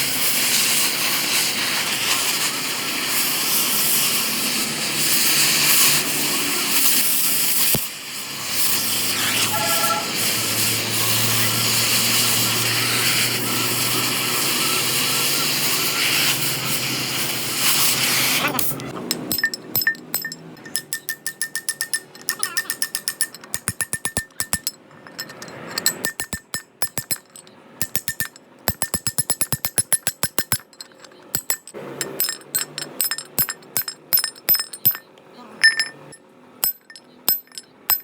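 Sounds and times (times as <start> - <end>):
hammer tapping metal: 18.8 - 38.0.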